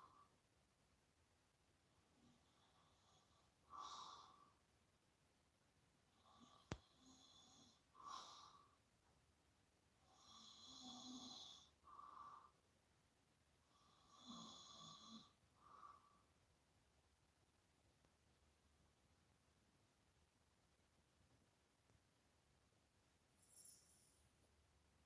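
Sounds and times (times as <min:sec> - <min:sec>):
soft snoring: 0:02.0 - 0:04.6, 0:06.1 - 0:08.8, 0:10.0 - 0:12.6, 0:13.6 - 0:16.3.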